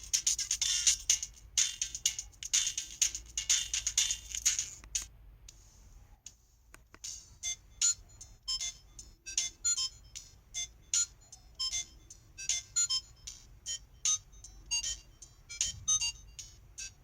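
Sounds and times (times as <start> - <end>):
busy electronic ringtone: 0.0 - 4.6, 7.3 - 17.0
high plinking ringtone: 7.4 - 17.0.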